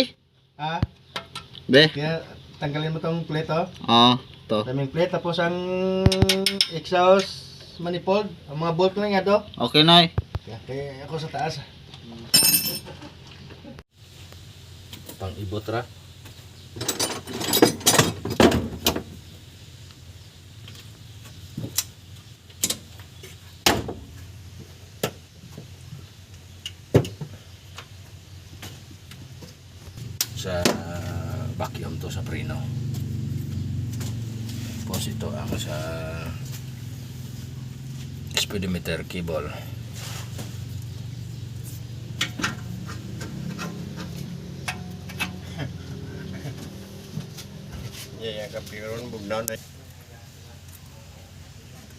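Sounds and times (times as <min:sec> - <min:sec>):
hand tools tapping on engine parts: 0:00.9 - 0:01.7, 0:06.1 - 0:07.3, 0:42.1 - 0:45.8
metal tools clanking on engine parts: 0:01.1 - 0:01.6, 0:12.3 - 0:13.2, 0:16.8 - 0:19.0, 0:42.2 - 0:46.8
steady low hum: 0:10.5 - 0:51.9.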